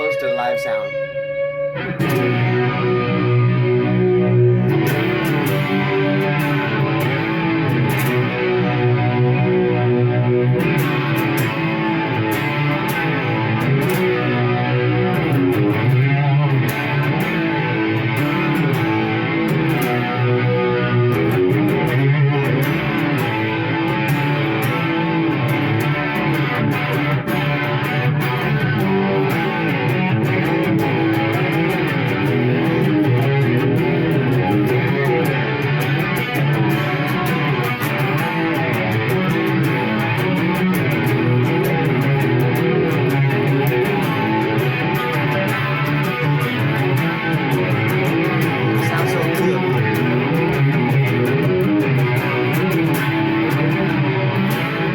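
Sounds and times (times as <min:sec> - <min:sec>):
electric guitar through amplifier: 0:00.0 - 0:54.9.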